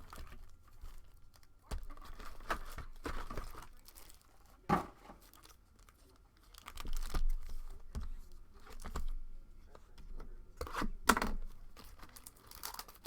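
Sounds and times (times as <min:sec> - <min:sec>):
wrappers torn and crinkled: 0:01.0 - 0:04.4, 0:05.2 - 0:07.4, 0:11.8 - 0:13.0.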